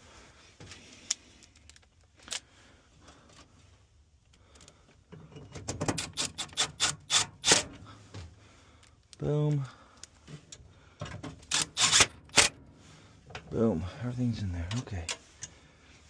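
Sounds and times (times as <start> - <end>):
metallic clicks and scrapes: 5.4 - 7.8, 11.4 - 12.6.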